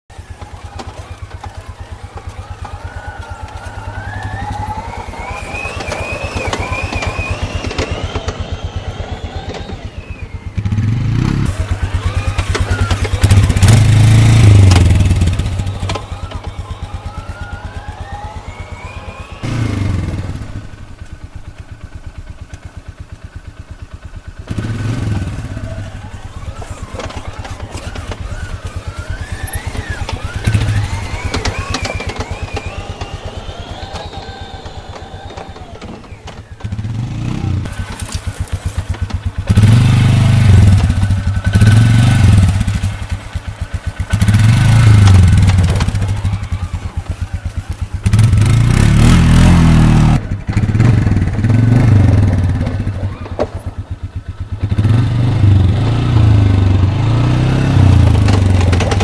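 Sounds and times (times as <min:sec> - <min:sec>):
atv engine revving: 0:00.0 - 0:59.0
low engine bursts: 0:00.1 - 0:59.0.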